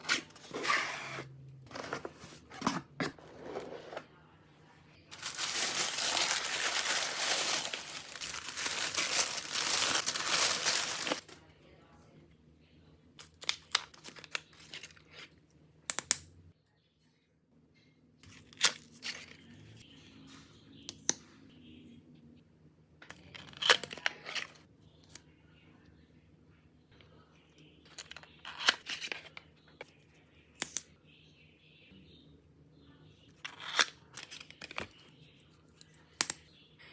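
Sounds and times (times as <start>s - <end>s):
paper tearing and crinkling: 5.2s - 11.4s.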